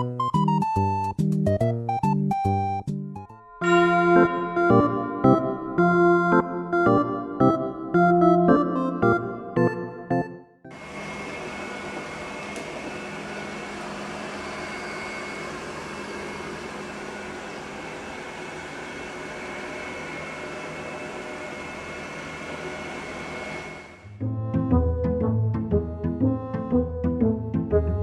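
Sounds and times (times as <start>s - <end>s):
mechanical hum with high whine: 10.7s - 24.1s.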